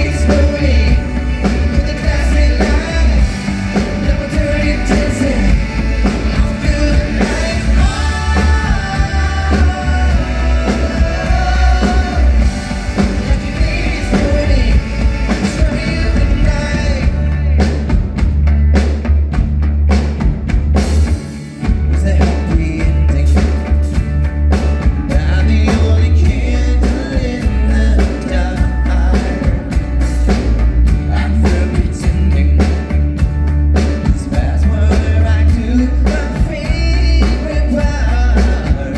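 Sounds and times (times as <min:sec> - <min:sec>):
person singing: 0:00.0 - 0:18.1, 0:25.0 - 0:30.1
drum kit: 0:00.0 - 0:38.9
live rock band playing: 0:00.0 - 0:38.9.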